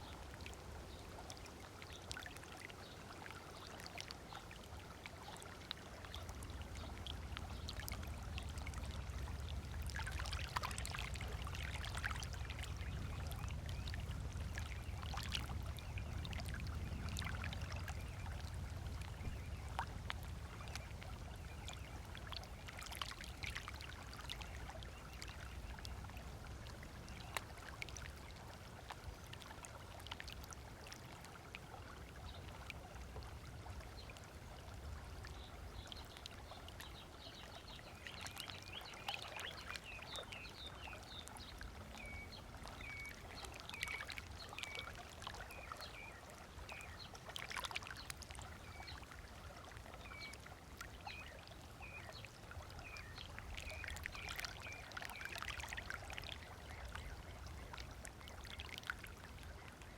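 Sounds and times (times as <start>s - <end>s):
small waves lapping on sand: 0.0s - 59.9s
water splashes and trickles: 0.0s - 59.9s
low steady rumble: 5.8s - 38.9s.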